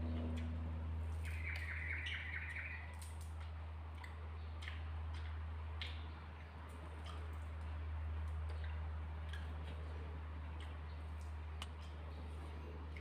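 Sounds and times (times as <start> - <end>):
steady low hum: 0.0 - 13.0
small bird chirping trill: 1.2 - 3.0.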